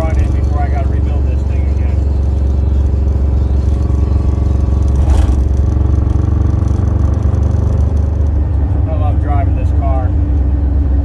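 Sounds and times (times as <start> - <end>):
deep engine rumble: 0.0 - 11.0.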